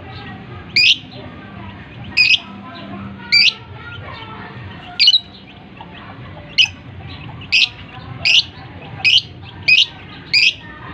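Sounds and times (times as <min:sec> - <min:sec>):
faint bird chirping: 0:00.0 - 0:10.9
lovebird squawks: 0:00.7 - 0:01.2, 0:02.0 - 0:02.5, 0:03.2 - 0:04.0, 0:04.9 - 0:10.6.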